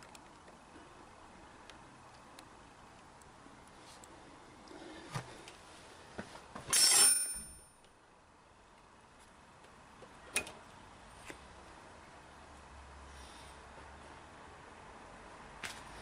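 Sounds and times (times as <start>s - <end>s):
metal tools clinking: 6.7s - 7.8s.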